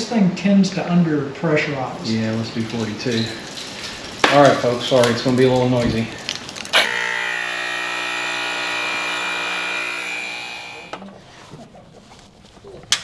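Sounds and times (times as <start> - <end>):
electric tire inflator running: 6.8 - 13.0.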